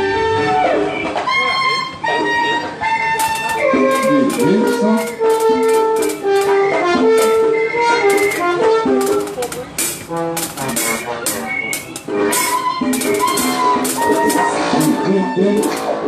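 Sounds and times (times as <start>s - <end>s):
live band playing calypso: 2.9s - 15.8s.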